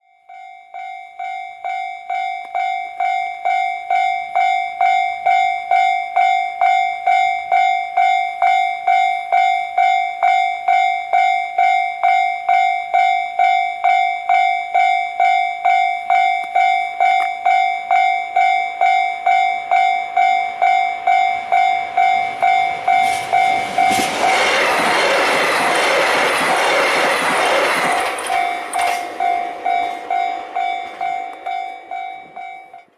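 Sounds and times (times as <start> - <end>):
level crossing warning bell: 0.0 - 32.9
approaching train rushing: 18.8 - 32.9.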